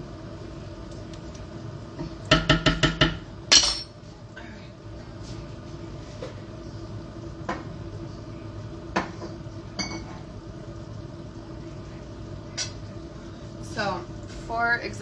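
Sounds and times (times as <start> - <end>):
kitchen hum: 0.0 - 15.0
kitchenware knocking: 2.3 - 3.9
glass clinking: 3.5 - 4.0, 9.8 - 10.2.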